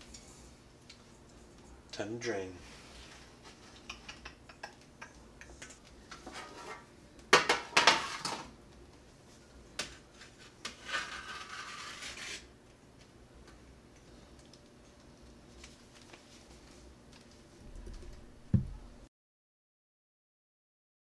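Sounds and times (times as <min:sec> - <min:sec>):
dishes clattering: 0:06.1 - 0:08.5.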